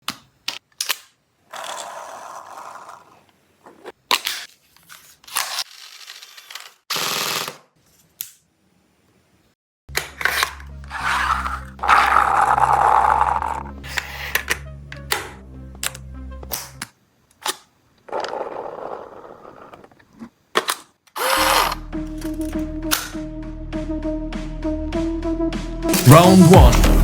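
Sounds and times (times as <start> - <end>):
music with steady bass line: 23.5 - 27.0.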